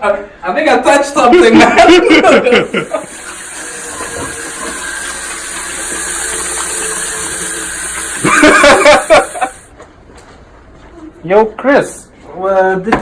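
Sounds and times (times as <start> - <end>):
water running from a tap: 2.5 - 9.7.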